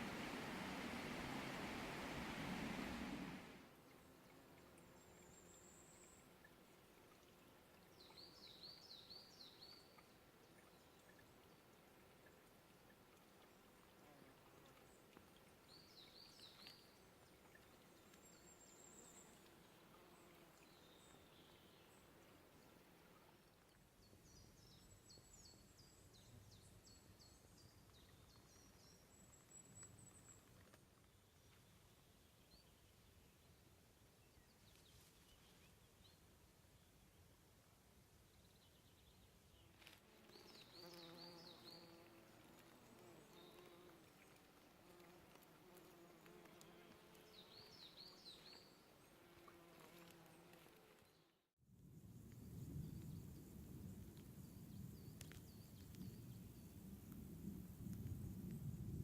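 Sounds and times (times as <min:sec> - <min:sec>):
bee humming: 0:00.0 - 0:03.5
low outdoor rumble: 0:00.0 - 0:03.6.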